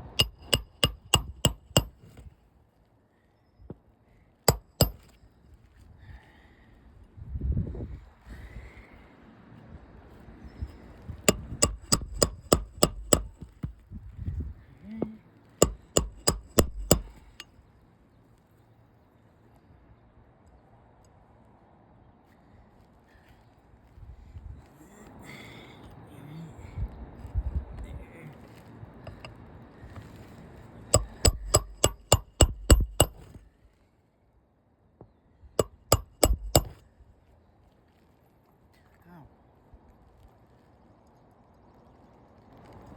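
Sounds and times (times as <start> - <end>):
hammer striking roofing nails: 0.0 - 2.2, 4.5 - 5.1, 11.3 - 13.7, 15.6 - 17.4, 29.1 - 29.3, 31.0 - 33.4, 35.6 - 36.8.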